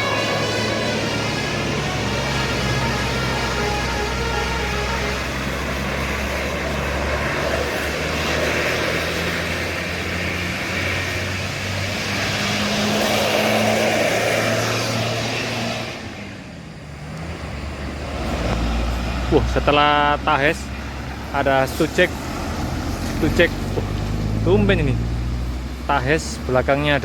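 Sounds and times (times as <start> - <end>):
vehicle engine passing by: 0.0 - 27.0.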